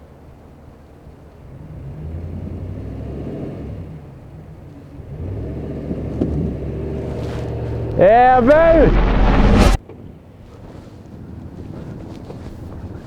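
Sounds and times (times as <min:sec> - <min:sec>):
car engine revving: 0:05.0 - 0:09.8.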